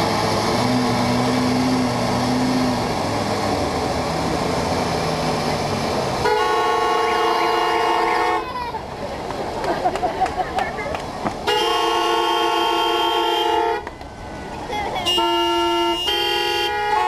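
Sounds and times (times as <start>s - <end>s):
car horns playing music: 6.2s - 8.4s, 11.4s - 13.9s, 15.0s - 17.0s.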